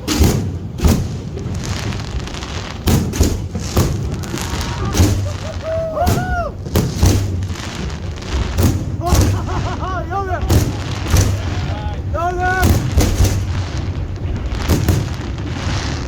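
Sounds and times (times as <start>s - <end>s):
fireworks booming: 0.0s - 16.0s.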